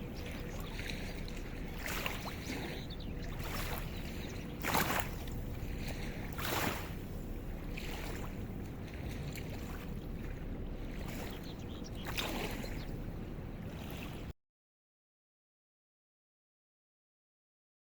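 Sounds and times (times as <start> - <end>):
low river rumble: 0.0 - 14.3
wind buffeting microphone: 0.0 - 14.3.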